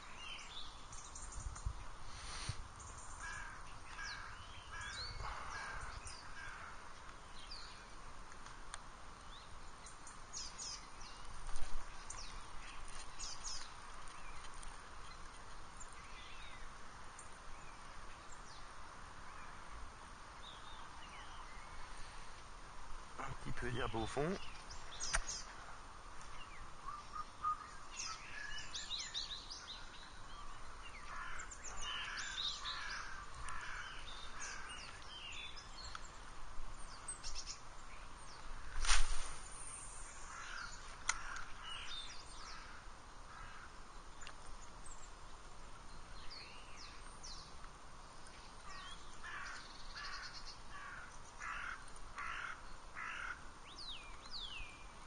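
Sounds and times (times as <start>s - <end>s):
birds chirping and trilling: 0.0s - 8.2s, 9.2s - 22.4s, 23.2s - 55.0s
harsh bird calls: 2.1s - 8.0s, 23.2s - 25.7s, 26.3s - 36.2s.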